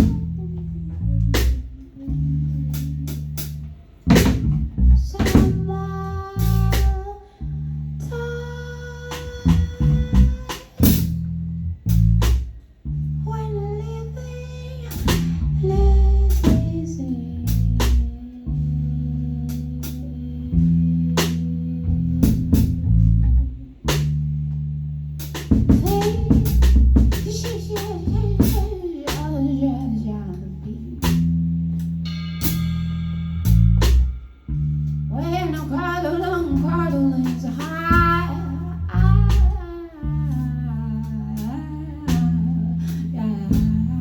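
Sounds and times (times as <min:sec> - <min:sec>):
sustained bass notes: 0:00.0 - 0:44.0
drum kit hits and fills: 0:32.0 - 0:34.4.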